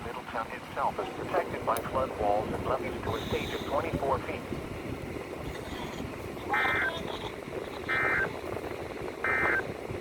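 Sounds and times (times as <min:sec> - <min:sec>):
radio hiss: 0:00.0 - 0:04.5
buzzy digital data bursts: 0:09.2 - 0:09.7.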